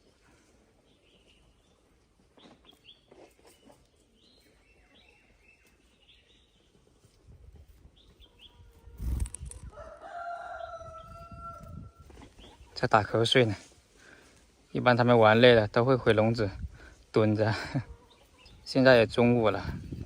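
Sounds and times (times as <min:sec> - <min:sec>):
sparrows chirping: 0:00.8 - 0:06.8, 0:07.8 - 0:09.6, 0:17.2 - 0:20.0
rooster crowing: 0:09.7 - 0:12.0.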